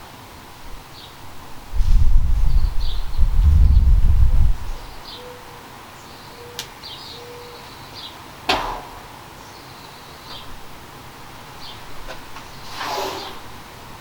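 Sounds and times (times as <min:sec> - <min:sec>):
small birds chirping: 0:00.9 - 0:01.2, 0:02.1 - 0:08.3, 0:09.2 - 0:10.7, 0:11.3 - 0:13.4
sharp knock: 0:08.5 - 0:09.1.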